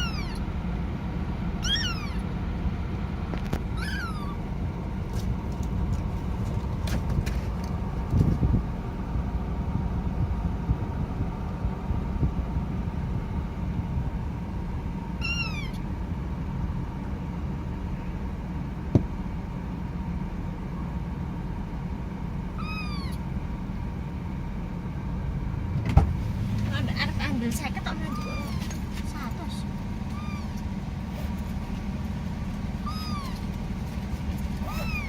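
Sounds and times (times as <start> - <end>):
kitten meowing: 0.0 - 0.5, 1.6 - 2.3, 3.8 - 4.4, 15.2 - 15.8, 22.6 - 23.3, 28.0 - 28.8, 30.1 - 30.7, 32.8 - 33.5, 34.6 - 35.0
steady low rumble: 0.0 - 35.0.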